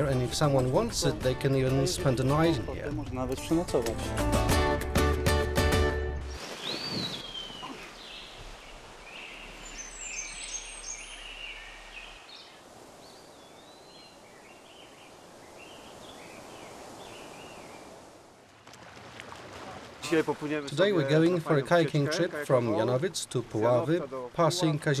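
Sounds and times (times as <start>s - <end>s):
steady outdoor hiss: 6.2s - 25.0s
small birds singing and chirping: 6.6s - 17.9s.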